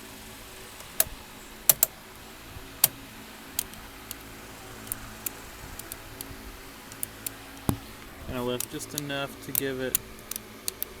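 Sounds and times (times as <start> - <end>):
hard plastic parts clicking: 0.8 - 1.9, 3.6 - 11.0.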